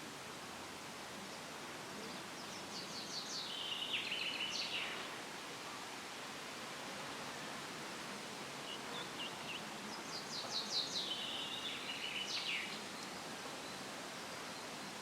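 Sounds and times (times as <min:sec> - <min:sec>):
leaves rustling in breeze: 0:00.0 - 0:15.0
songbird chirping and singing: 0:09.0 - 0:13.1.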